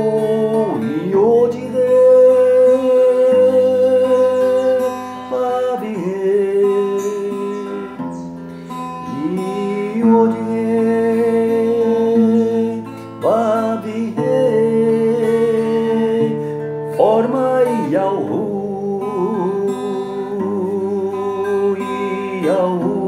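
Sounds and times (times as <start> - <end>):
guitar music: 0.0 - 23.0.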